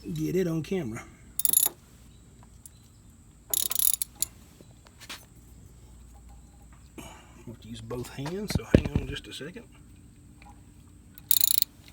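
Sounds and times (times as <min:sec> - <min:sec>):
metal tools clicking and rattling: 0:01.4 - 0:01.8, 0:03.6 - 0:04.3, 0:11.2 - 0:11.6.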